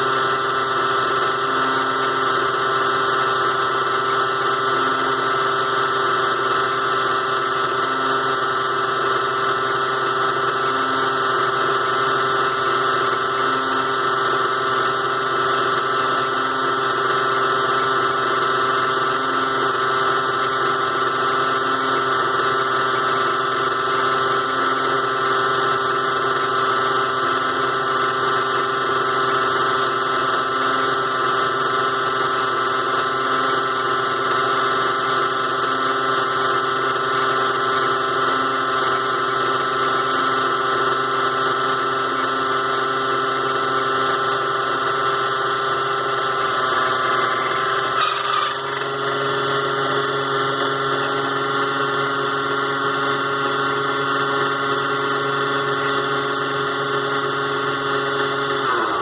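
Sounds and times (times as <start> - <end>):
small motor whining: 44.4 - 59.0.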